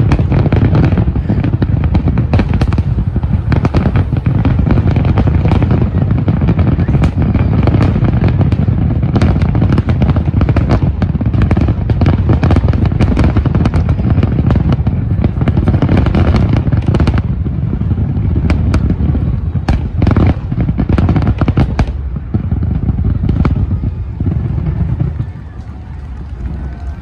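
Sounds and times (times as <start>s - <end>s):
deep rumble: 0.0s - 9.5s
fireworks crackling bangs: 0.0s - 27.0s.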